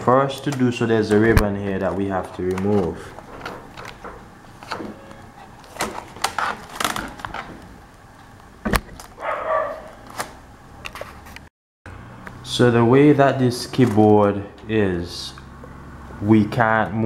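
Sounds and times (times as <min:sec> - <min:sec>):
plastic keyboard clicks and handling: 0:00.4 - 0:04.0, 0:05.6 - 0:07.5.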